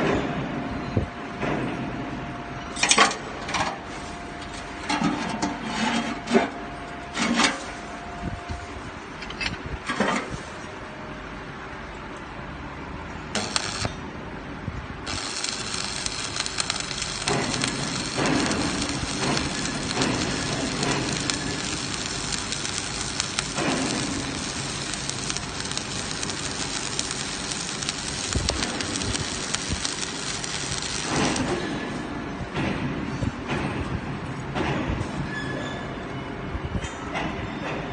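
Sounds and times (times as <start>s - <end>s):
welding arc crackling sizzle: 13.4s - 14.0s, 15.0s - 32.0s.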